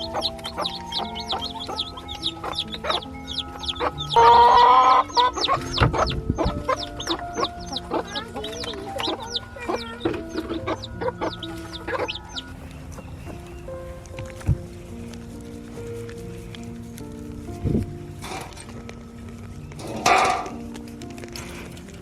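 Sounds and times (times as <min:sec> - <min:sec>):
loud chicken call: 0:00.0 - 0:08.1
chickens clucking and peeping: 0:00.0 - 0:22.0
soft background music: 0:00.0 - 0:22.0.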